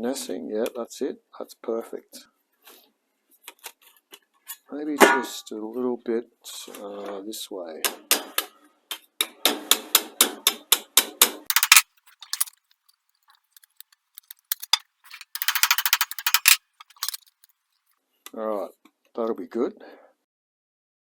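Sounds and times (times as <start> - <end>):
sharp metallic clicks: 11.5 - 12.5, 13.6 - 17.4.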